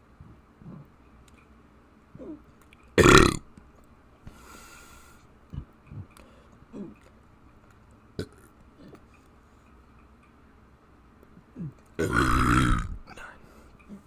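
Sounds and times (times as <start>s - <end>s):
person burping: 3.0s - 3.5s, 8.2s - 9.0s, 11.5s - 13.0s.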